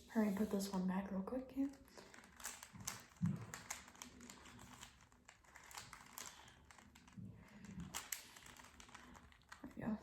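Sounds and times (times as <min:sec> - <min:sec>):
plastic puzzle cube clicking: 0:02.1 - 0:09.6.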